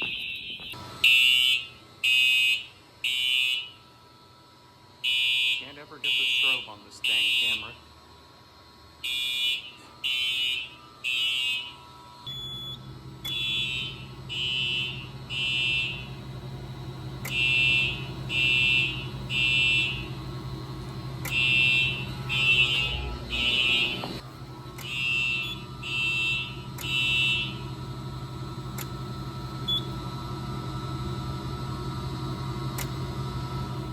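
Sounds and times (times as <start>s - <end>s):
fire alarm horns blasting: 0.0s - 4.0s, 5.0s - 7.8s, 9.0s - 24.2s, 24.8s - 30.1s
low hum: 11.9s - 33.9s.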